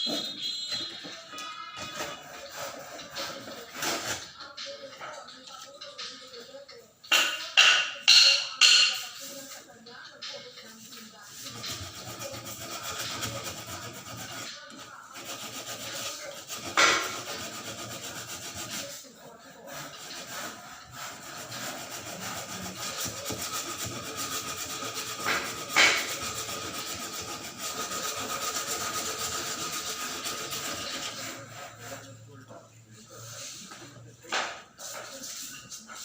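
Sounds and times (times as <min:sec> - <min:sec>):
hand-sanding with sandpaper: 0:10.9 - 0:32.1.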